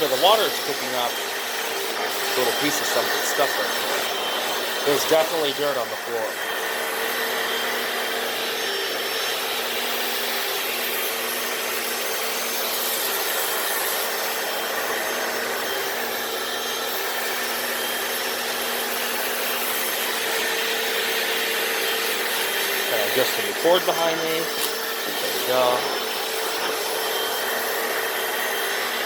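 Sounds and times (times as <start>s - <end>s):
brushes scrubbing wet concrete: 0.0s - 6.4s, 19.2s - 29.0s
floor cleaner motor hum: 0.0s - 29.0s.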